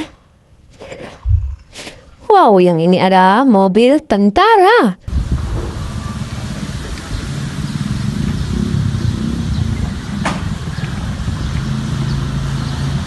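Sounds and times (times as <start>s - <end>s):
vehicle engine running: 5.1s - 13.0s.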